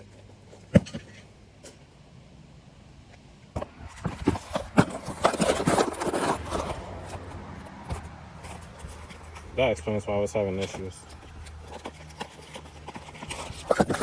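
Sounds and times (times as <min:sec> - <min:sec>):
rustling and scraping: 0:03.0 - 0:14.0.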